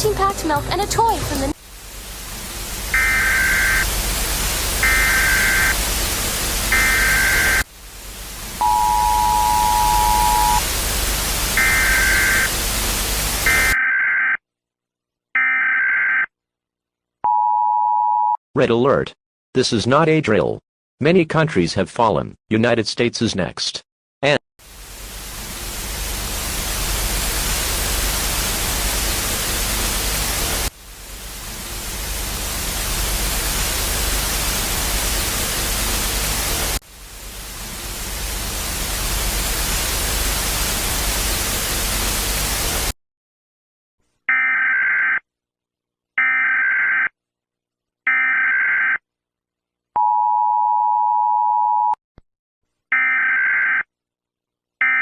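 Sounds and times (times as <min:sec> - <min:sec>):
white-noise static: 0:00.0 - 0:13.8, 0:24.6 - 0:43.0
two-tone attention signal: 0:08.6 - 0:10.6.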